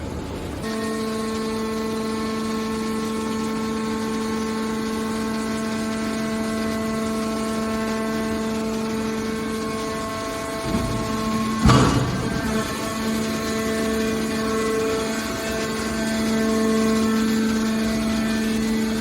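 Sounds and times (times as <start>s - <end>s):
pump motor humming: 0.6s - 19.0s.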